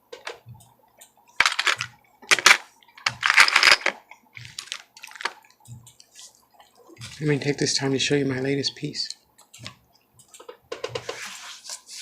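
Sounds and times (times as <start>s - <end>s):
small hard objects clattering: 1.4s - 5.4s.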